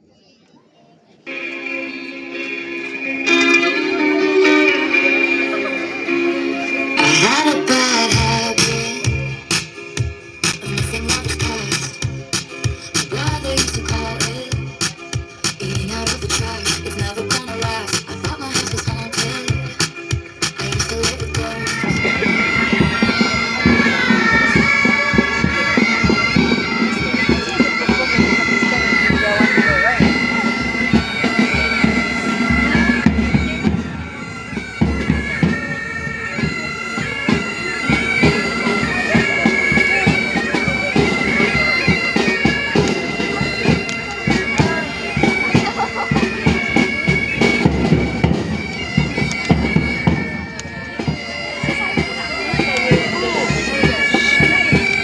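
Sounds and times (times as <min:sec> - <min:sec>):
bagpipes playing a march: 0:01.3 - 0:09.4, 0:21.1 - 0:55.0
steady drum beat: 0:05.4 - 0:55.0.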